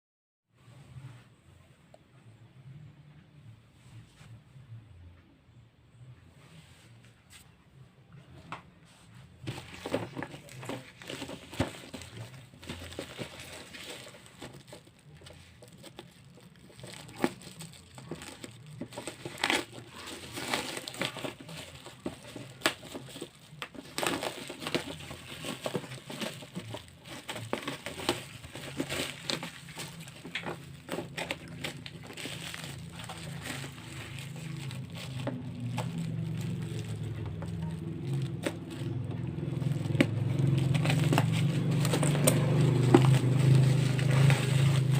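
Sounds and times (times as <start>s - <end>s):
packaging crinkling: 9.4s - 44.9s
low hum: 9.5s - 44.9s.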